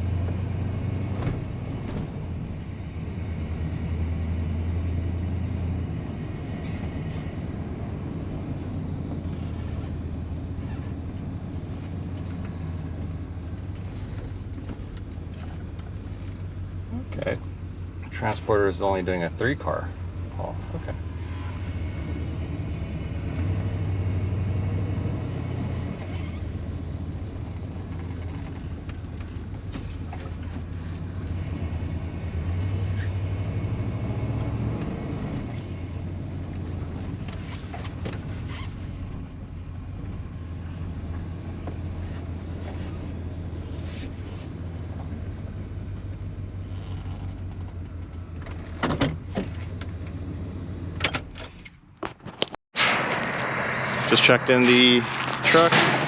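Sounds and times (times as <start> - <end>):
sharp knocks: 52.8 - 56.0.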